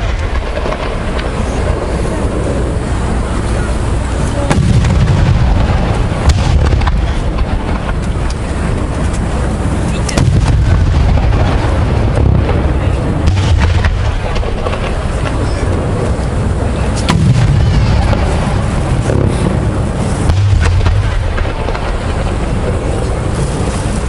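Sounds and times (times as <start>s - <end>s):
firework sharp crack: 0.0s - 24.0s
fireworks booming: 0.0s - 24.0s.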